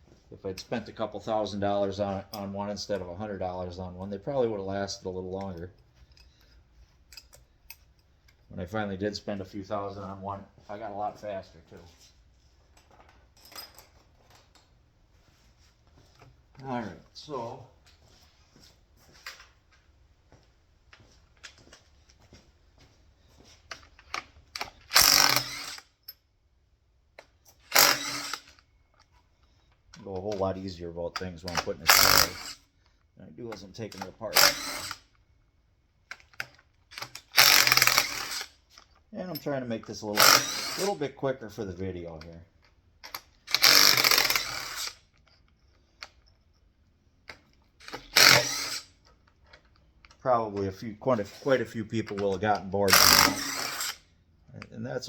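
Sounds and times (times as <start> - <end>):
metal parts clicking: 5.4 - 8.4, 23.7 - 26.2, 31.2 - 32.6, 36.1 - 39.5, 42.2 - 46.6, 47.3 - 50.2, 51.2 - 54.0
ratcheting tool bursts: 24.2 - 26.0, 27.5 - 28.7, 31.5 - 32.7, 33.9 - 35.2, 36.1 - 38.6, 40.1 - 41.0, 43.0 - 45.2, 47.3 - 49.0, 52.9 - 54.1.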